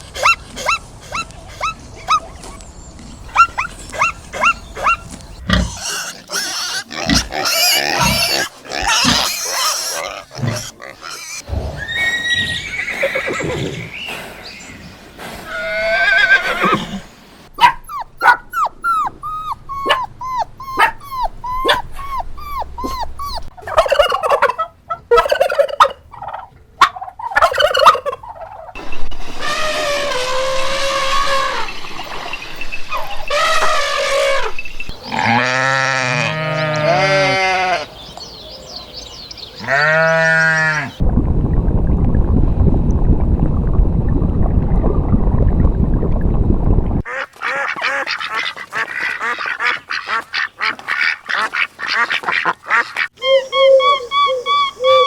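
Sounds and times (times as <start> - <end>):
farm animal calls: 17.6 - 28.8, 47.1 - 55.0.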